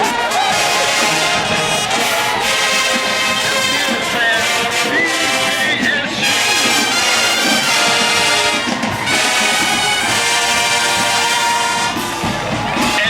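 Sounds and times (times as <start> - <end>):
brass band playing chords: 0.0 - 13.0.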